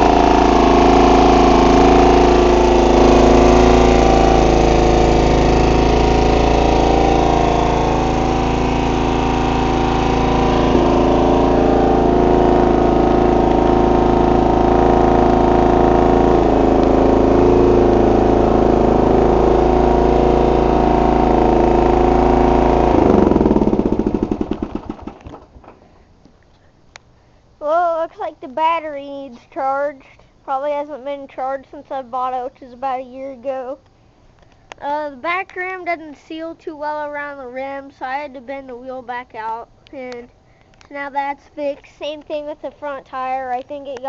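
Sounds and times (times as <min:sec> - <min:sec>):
riding mower engine running: 0:00.0 - 0:26.1.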